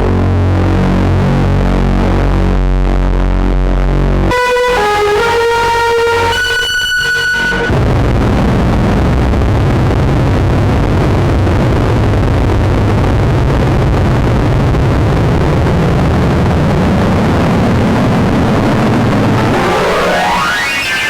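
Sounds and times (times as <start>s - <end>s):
distorted noise wall with low rumble: 7.7s - 21.0s
synthesizer tones: 19.1s - 21.0s.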